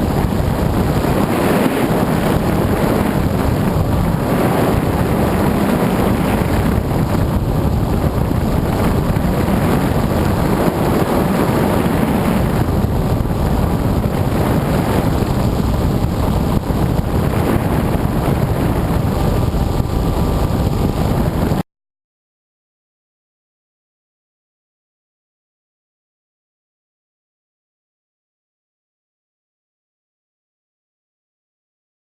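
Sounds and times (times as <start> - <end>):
drone motors humming: 0.0 - 21.6
wind rushing over microphone: 0.0 - 21.6.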